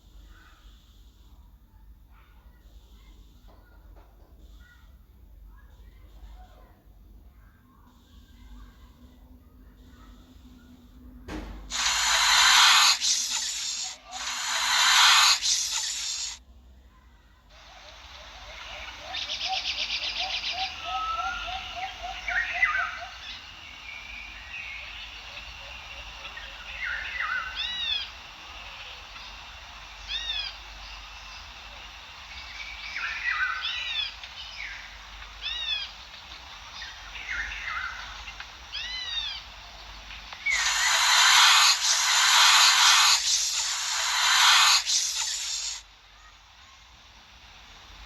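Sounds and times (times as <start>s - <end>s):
loud hiss: 11.3s - 16.4s, 17.5s - 48.0s
bird short arched call: 11.7s - 16.4s
birds chirping: 11.7s - 16.4s, 17.6s - 48.0s.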